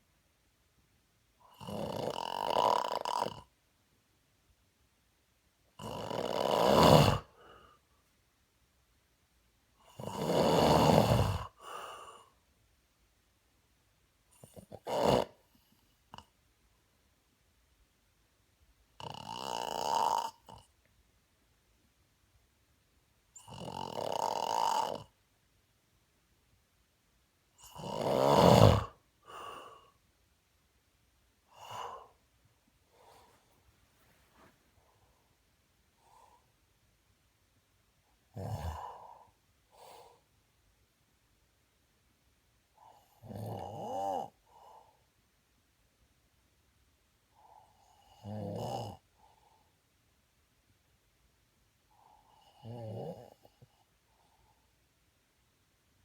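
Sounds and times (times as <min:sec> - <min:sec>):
person snoring: 0:01.5 - 0:03.5, 0:05.8 - 0:07.3, 0:09.9 - 0:11.6, 0:19.0 - 0:20.7, 0:23.4 - 0:25.1, 0:27.6 - 0:29.9, 0:31.5 - 0:32.1, 0:38.4 - 0:39.2
soft breath: 0:29.2 - 0:30.1, 0:31.5 - 0:36.7.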